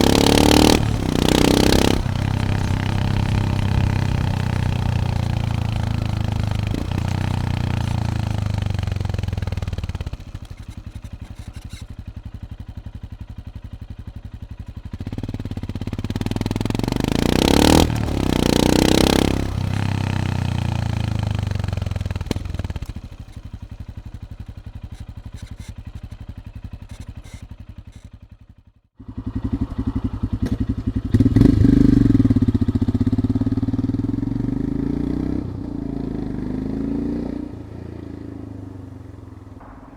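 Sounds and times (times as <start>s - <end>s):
motorcycle riding past: 0.0s - 10.4s, 15.0s - 23.4s, 29.0s - 39.9s
motorcycle engine running: 0.0s - 39.9s.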